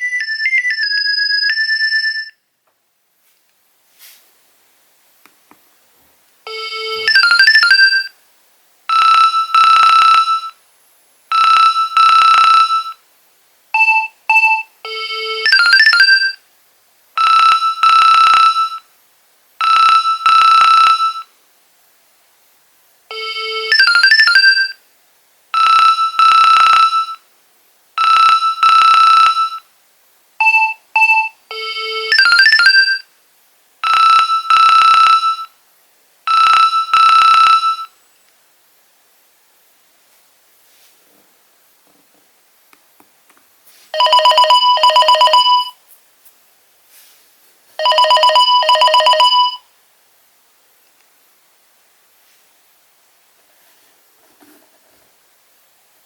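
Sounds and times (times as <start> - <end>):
mobile phone melody ringtone: 0.0 - 2.4, 6.5 - 8.1, 8.9 - 10.5, 11.3 - 13.0, 13.8 - 16.4, 17.2 - 18.8, 23.1 - 24.8, 25.6 - 27.2, 28.0 - 29.6, 30.4 - 33.0, 33.8 - 35.5, 36.3 - 37.9, 44.0 - 45.8, 47.8 - 49.6.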